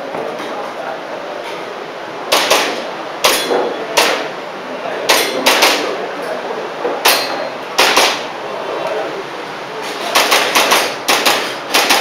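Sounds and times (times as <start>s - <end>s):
airsoft pistol shots: 2.3s - 4.2s, 5.1s - 5.9s, 7.8s - 8.2s, 10.1s - 12.0s.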